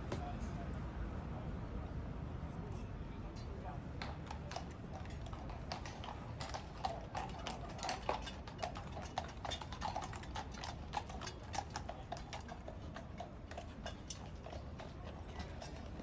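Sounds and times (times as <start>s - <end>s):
horse hooves clip-clopping on road: 3.6s - 16.0s.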